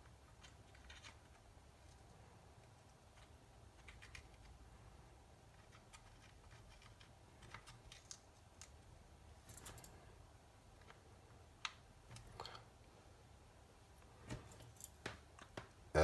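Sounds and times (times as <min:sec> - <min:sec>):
small handling clicks and taps: 0:14.8 - 0:15.8.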